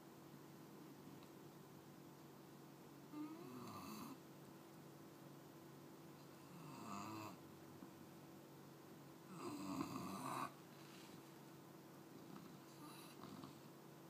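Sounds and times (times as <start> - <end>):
puppy snoring: 3.1 - 4.2, 6.4 - 7.4, 9.3 - 10.6, 12.2 - 13.7.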